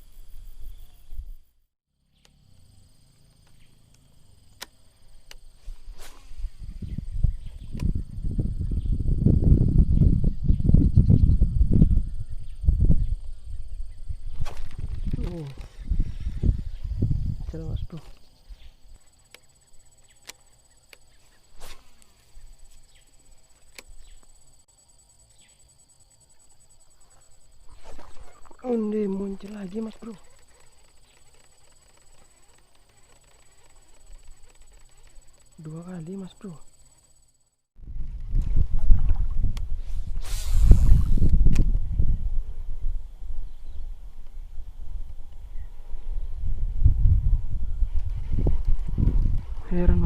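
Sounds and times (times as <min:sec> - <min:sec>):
high-pitched insect drone: 0:22.1 - 0:37.6
sharp clicks: 0:29.1 - 0:35.8.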